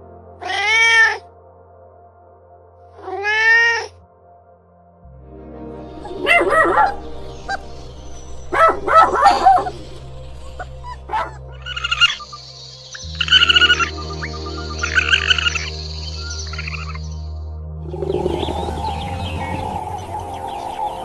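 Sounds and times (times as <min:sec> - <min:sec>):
soft background music: 0:00.0 - 0:21.0
animal calls: 0:06.0 - 0:17.0, 0:17.9 - 0:21.0
chirps: 0:06.0 - 0:21.0.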